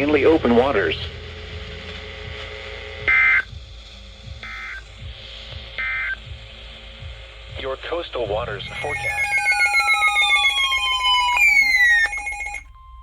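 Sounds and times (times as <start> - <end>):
two-tone digital data warble: 8.7 - 12.7.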